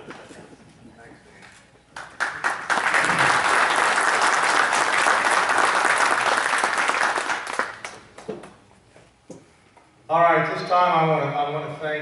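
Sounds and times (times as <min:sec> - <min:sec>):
audience applauding: 0:02.0 - 0:08.3.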